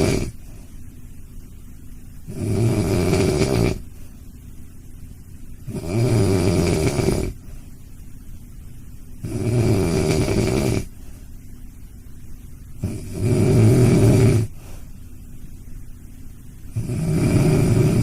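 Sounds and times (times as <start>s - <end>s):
dog snoring: 0.0s - 0.4s, 2.3s - 3.9s, 5.6s - 7.5s, 9.2s - 10.9s, 12.8s - 14.8s, 16.7s - 18.0s.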